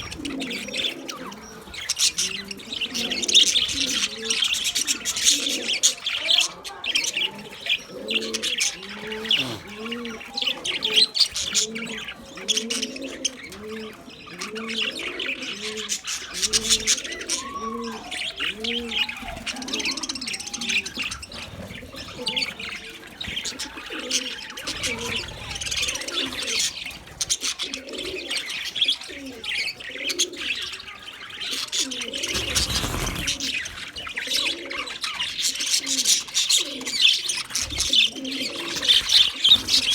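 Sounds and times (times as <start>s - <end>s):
budgies chirping: 0.0s - 39.9s
low cooing notes: 7.4s - 11.0s.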